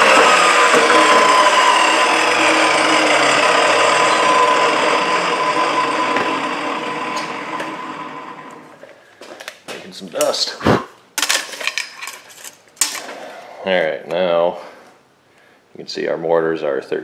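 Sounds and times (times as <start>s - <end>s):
table saw whine coasting down: 0.0s - 8.8s.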